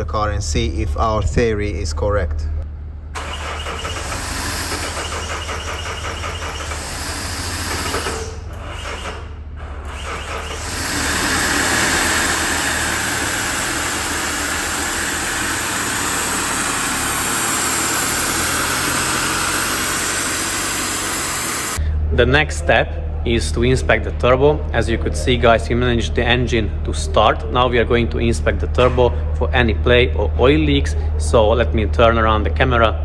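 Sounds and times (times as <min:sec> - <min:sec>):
diesel engine rumble: 0:00.0 - 0:33.0
exhaust gas hissing: 0:03.2 - 0:22.0.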